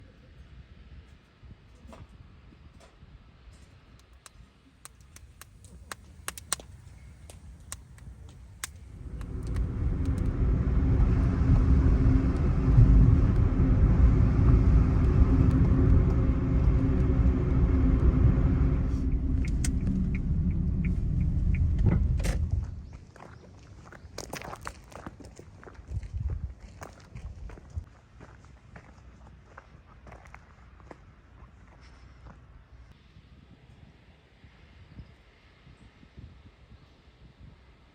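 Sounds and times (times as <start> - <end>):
faint clicks: 4.0 - 10.4
vehicle engine rumbling: 4.7 - 24.8.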